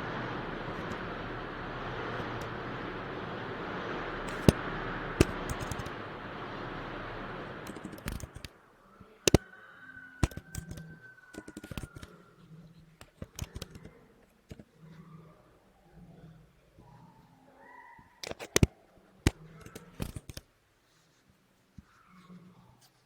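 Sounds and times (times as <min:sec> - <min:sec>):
steady hiss: 0:00.0 - 0:09.4
keyboard and mouse clicks: 0:04.3 - 0:04.6, 0:05.2 - 0:06.0, 0:07.6 - 0:08.6, 0:10.2 - 0:12.2, 0:13.0 - 0:14.6, 0:18.2 - 0:18.7, 0:19.3 - 0:20.5.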